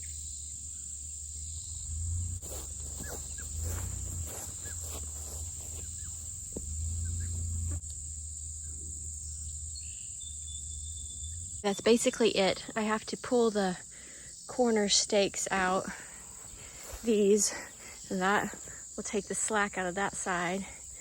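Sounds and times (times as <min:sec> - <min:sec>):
low rumble: 0:00.0 - 0:11.7
insects chirping: 0:00.0 - 0:21.0.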